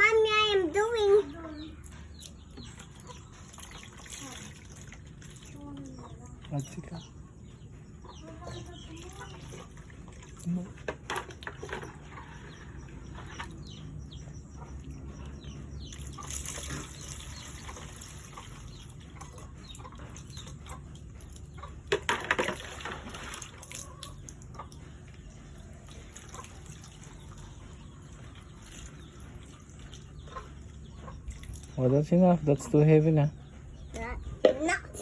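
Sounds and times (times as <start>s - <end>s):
water splashing: 2.1s - 6.0s, 15.8s - 20.6s, 22.1s - 24.6s
water pouring into a bottle: 22.3s - 24.2s.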